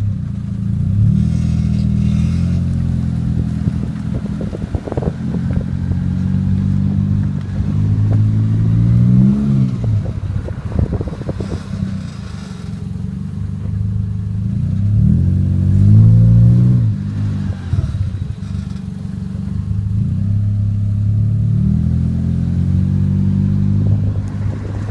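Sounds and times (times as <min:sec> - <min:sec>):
car engine running: 0:00.0 - 0:24.9
clicking and scraping: 0:01.1 - 0:05.7, 0:10.7 - 0:13.0, 0:17.4 - 0:19.6.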